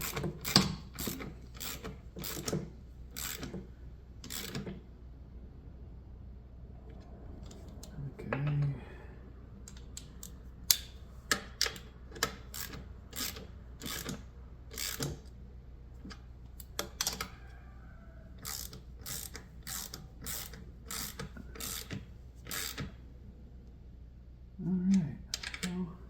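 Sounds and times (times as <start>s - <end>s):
ratchet wrench clicking: 0.0s - 3.6s, 4.2s - 4.7s, 9.7s - 15.3s, 18.4s - 23.0s.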